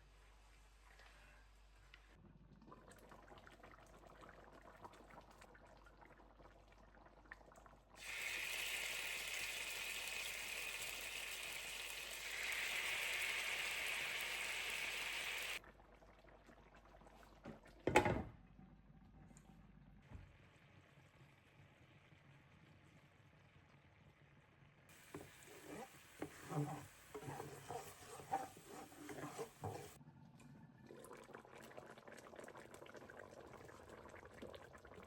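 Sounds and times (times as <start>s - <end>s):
water running from a tap: 8.0s - 15.6s.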